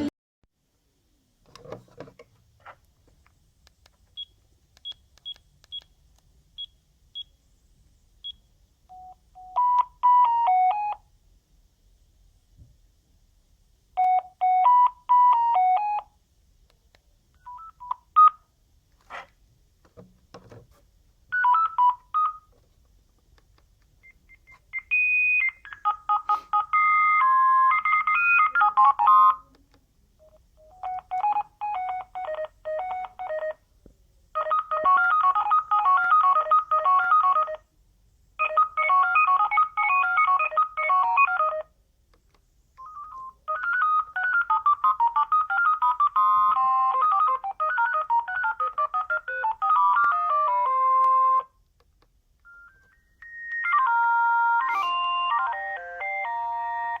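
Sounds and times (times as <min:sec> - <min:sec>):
phone ringtone beeping melodies: 0:08.9 - 0:11.0, 0:14.0 - 0:16.1, 0:21.3 - 0:22.5, 0:24.1 - 0:29.4, 0:30.2 - 0:33.6, 0:34.4 - 0:37.6, 0:38.4 - 0:41.7, 0:42.8 - 0:51.5, 0:52.4 - 0:57.0.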